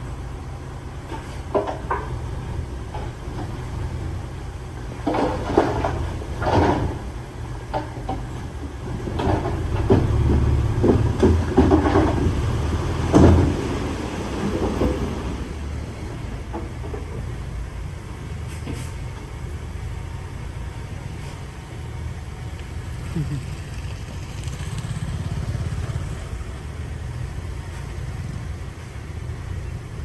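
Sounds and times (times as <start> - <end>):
heavy diesel machinery droning: 0.0 - 30.0.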